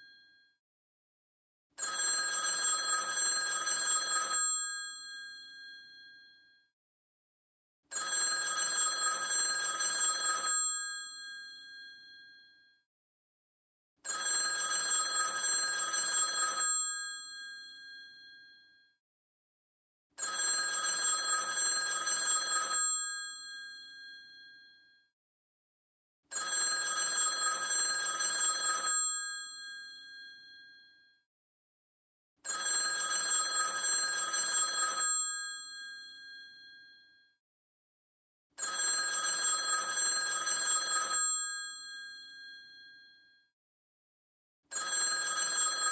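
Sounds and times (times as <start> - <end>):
telephone bell ringing: 1.8 - 6.4, 7.9 - 12.6, 14.0 - 18.8, 20.2 - 24.9, 26.3 - 31.0, 32.4 - 37.2, 38.6 - 43.2, 44.7 - 45.9.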